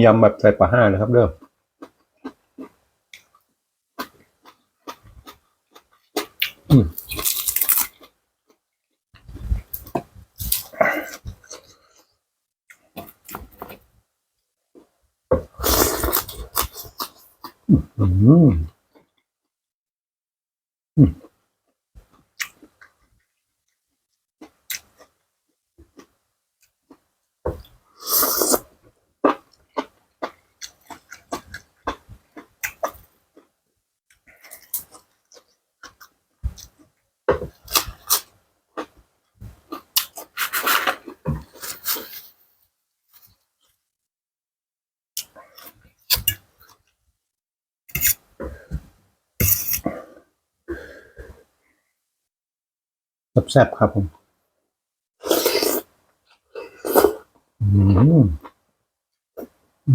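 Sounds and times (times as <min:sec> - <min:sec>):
crunchy chewing: 0:04.0 - 0:08.2
person biting slurping and chewing: 0:06.2 - 0:07.9, 0:15.6 - 0:17.2, 0:28.0 - 0:28.7, 0:40.0 - 0:42.2, 0:55.2 - 0:55.9
loud mouth sound: 0:56.9 - 0:58.4.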